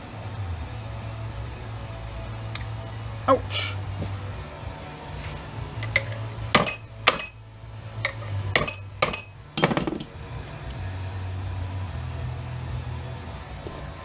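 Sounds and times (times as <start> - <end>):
steady low hum: 0.0 - 14.0
metal tools clinking: 5.3 - 7.4, 8.0 - 10.1.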